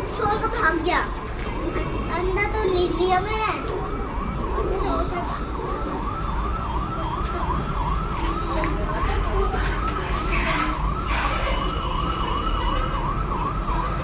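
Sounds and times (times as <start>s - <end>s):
electronic warbling siren tone: 3.5s - 14.0s.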